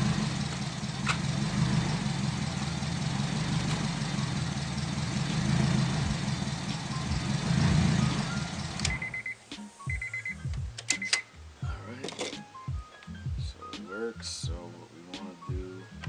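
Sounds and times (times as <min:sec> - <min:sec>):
car engine idling: 0:00.0 - 0:09.4.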